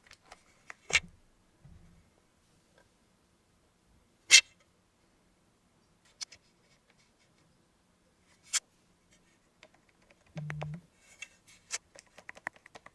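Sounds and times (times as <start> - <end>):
brief low buzz: 10.4 - 10.8
light clicks and taps: 11.8 - 12.9.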